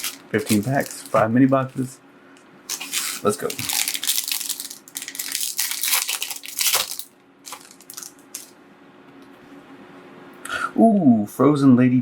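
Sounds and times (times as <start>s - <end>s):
wrapper tearing and crinkling: 0.0s - 1.9s, 2.7s - 8.6s.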